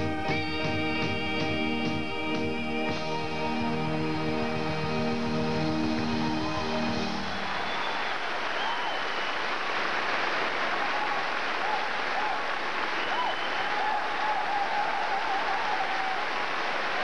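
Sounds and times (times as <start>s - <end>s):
audience applauding: 5.8s - 17.0s
cheers and whistles: 6.4s - 17.0s.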